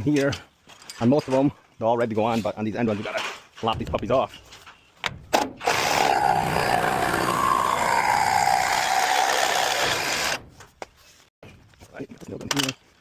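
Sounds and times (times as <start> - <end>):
power saw cutting wood: 5.6 - 10.4.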